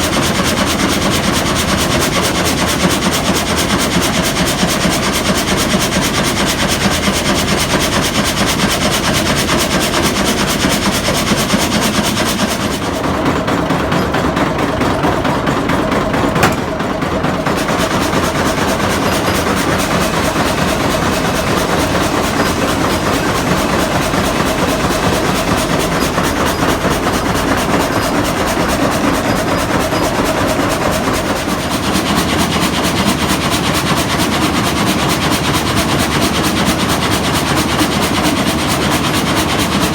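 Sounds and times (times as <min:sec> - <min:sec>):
frame saw clattering: 0:11.5 - 0:34.8
sharp knock: 0:16.4 - 0:16.8.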